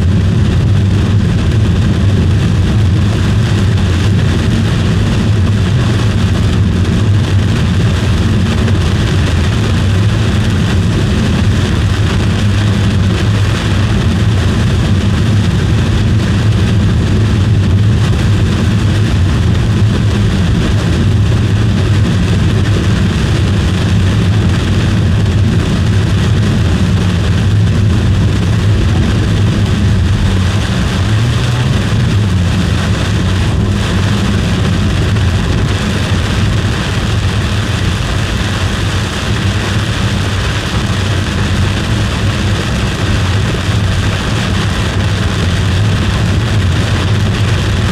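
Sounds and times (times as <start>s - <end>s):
car road and engine noise: 0.0s - 47.9s.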